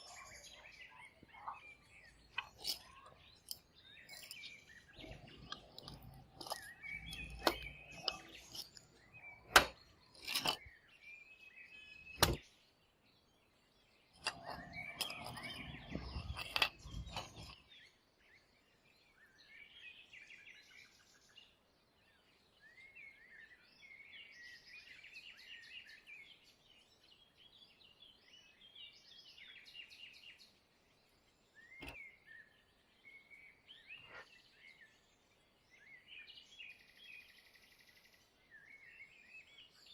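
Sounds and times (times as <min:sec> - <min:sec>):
birds chirping: 0:00.0 - 0:39.9
small objects clicking and knocking: 0:02.2 - 0:10.7, 0:12.1 - 0:12.4, 0:14.1 - 0:17.6, 0:31.8 - 0:32.0.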